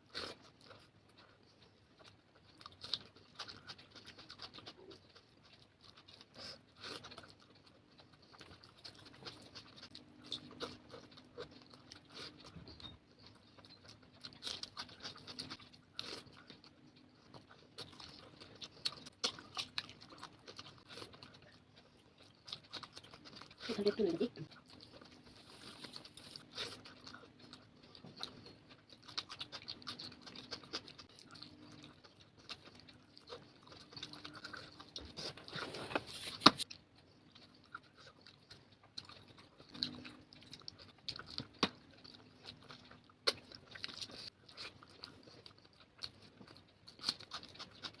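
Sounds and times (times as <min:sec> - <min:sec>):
wet chewing: 0:00.0 - 0:48.0.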